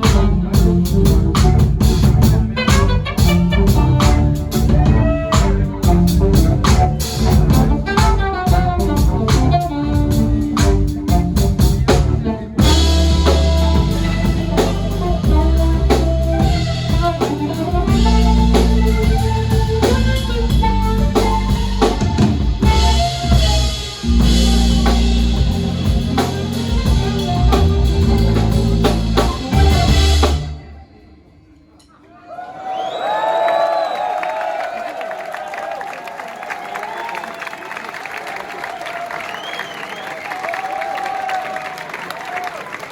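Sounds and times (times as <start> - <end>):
drum kit: 0.0 - 30.7
jazz-funk band playing: 0.0 - 30.8
audience cheering: 32.0 - 42.9.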